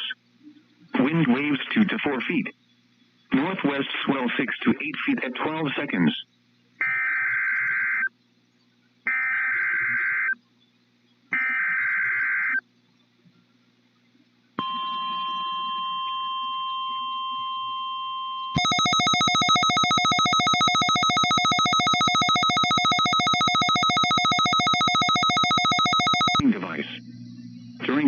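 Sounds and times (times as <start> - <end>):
pulsing buzzy electronic alarm: 14.6 - 26.4
steady warning alarm tone: 14.6 - 26.4.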